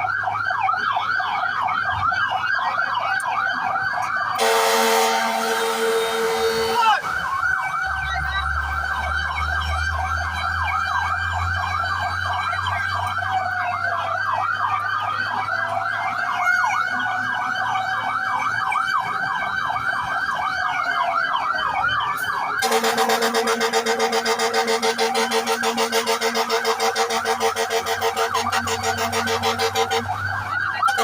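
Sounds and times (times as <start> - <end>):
fire truck siren yelping: 0.0 - 31.0
harsh pulsing siren tone: 0.0 - 31.0.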